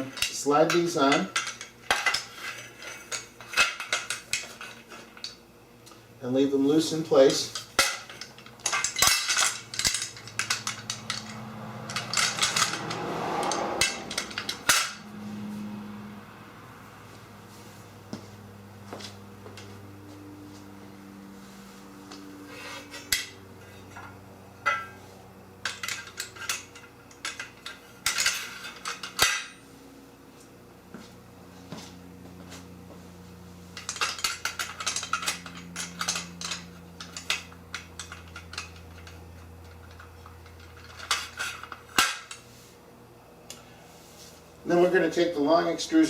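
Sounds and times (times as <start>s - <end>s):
metal parts clinking: 0.0s - 5.4s, 7.3s - 15.0s, 22.5s - 29.6s, 33.8s - 42.4s.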